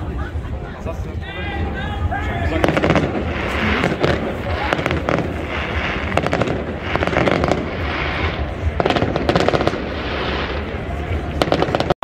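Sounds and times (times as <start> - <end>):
fireworks crackling and popping: 2.4 - 12.0.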